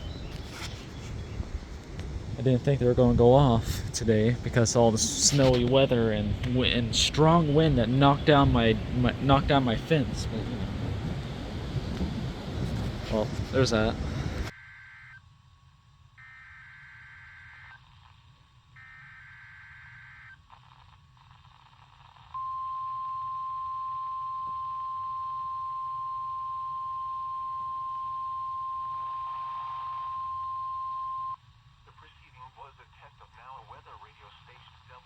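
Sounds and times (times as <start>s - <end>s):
steady warning alarm tone: 14.5s - 15.2s, 16.2s - 17.9s, 18.8s - 20.4s.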